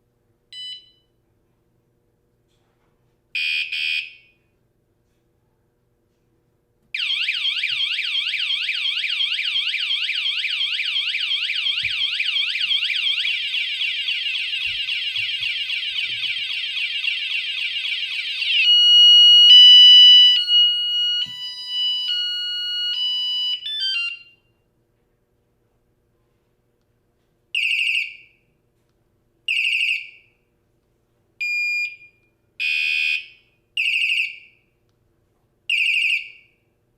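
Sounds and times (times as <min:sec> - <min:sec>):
bike alarm siren: 0:03.4 - 0:04.2, 0:07.0 - 0:24.4, 0:32.6 - 0:34.5.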